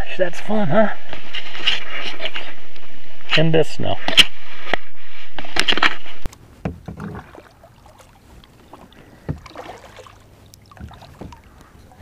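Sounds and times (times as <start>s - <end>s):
soft knocks against kayak hull: 6.6s - 12.0s.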